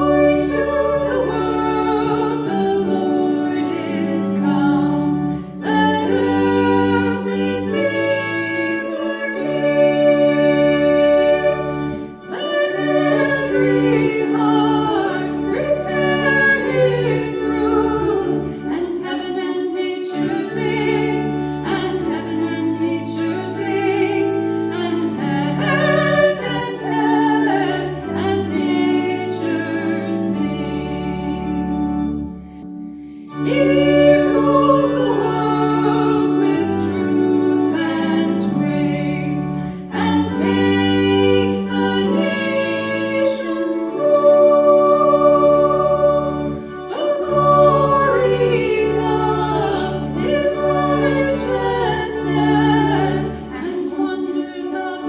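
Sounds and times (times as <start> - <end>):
person singing with vibrato: 0.0 - 31.7, 33.3 - 55.0
organ chords: 0.0 - 55.0.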